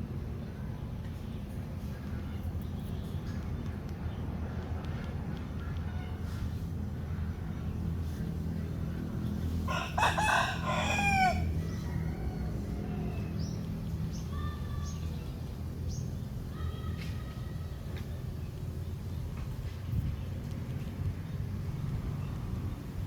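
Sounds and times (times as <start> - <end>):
rooster crowing: 9.7 - 13.2.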